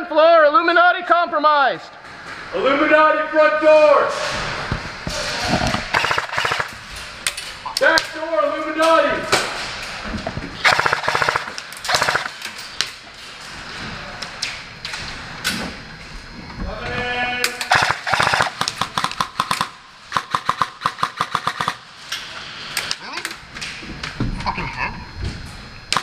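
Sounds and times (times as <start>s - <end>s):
airsoft guns firing: 5.9s - 6.9s, 10.6s - 12.4s, 17.6s - 21.9s.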